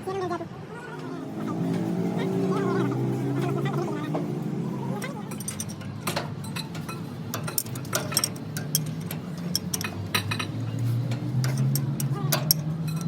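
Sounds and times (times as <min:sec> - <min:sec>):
low machine hum: 0:01.0 - 0:06.0.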